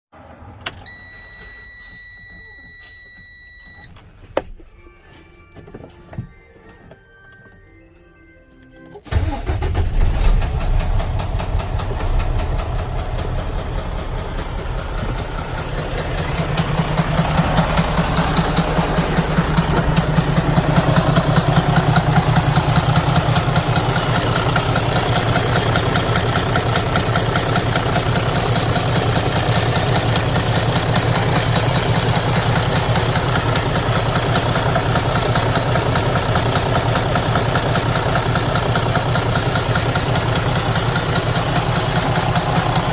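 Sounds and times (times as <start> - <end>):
diesel engine knocking: 9.9 - 42.9.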